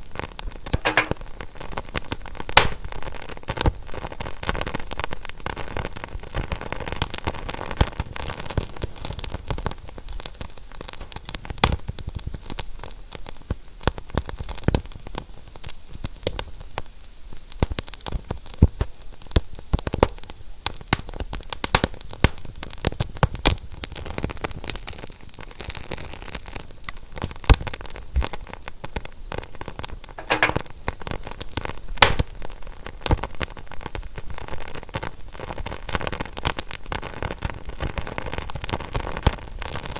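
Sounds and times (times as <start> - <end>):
wood fire crackling: 0.7 - 1.5, 2.3 - 3.2, 20.0 - 22.7, 30.2 - 30.8, 32.0 - 32.5.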